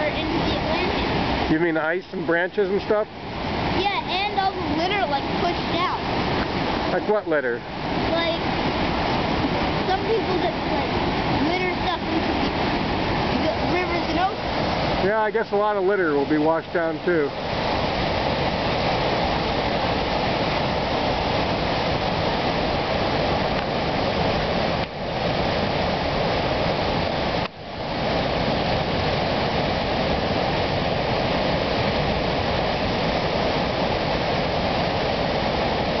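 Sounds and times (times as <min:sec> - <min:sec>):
river floodwater roaring: 0:00.0 - 0:36.0.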